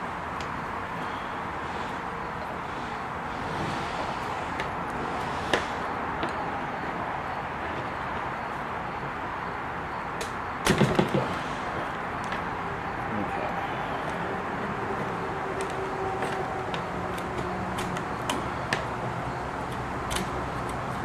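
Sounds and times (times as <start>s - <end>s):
steady hiss: 0.0s - 9.1s.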